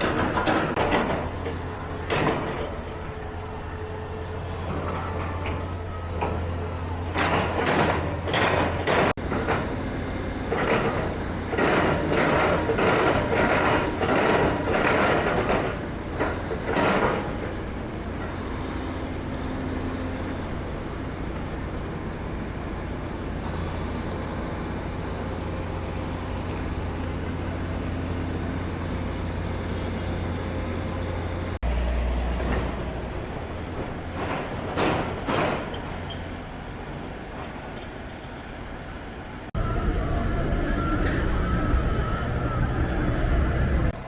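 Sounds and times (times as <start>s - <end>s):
road traffic hum: 0.0s - 44.0s.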